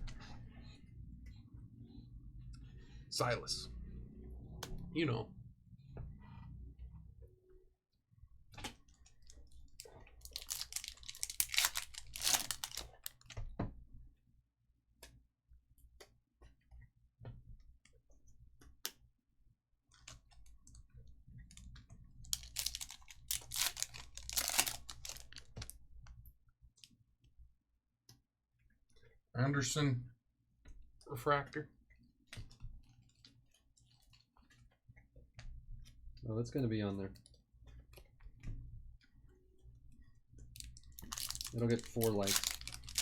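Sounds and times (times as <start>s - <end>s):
foil wrappers crinkling and tearing: 9.2s - 13.4s, 22.2s - 25.7s, 40.6s - 43.0s.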